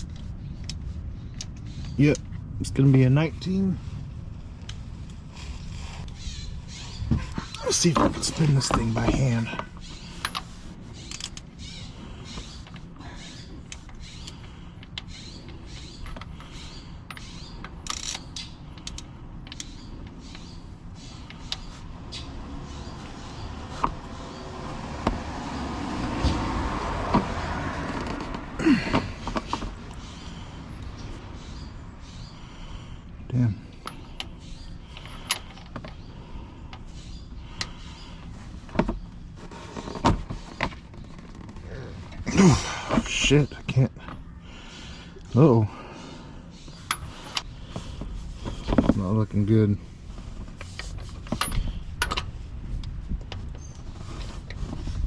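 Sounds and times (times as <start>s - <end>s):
socket wrench clicks and creaks: 10.2s - 11.5s, 13.7s - 20.5s.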